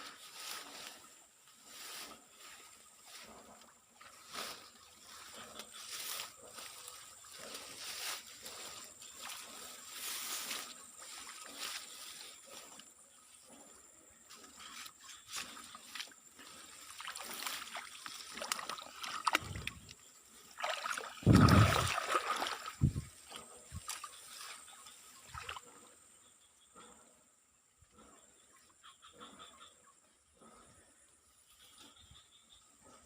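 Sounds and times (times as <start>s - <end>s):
water trickling and sloshing: 15.9s - 24.5s.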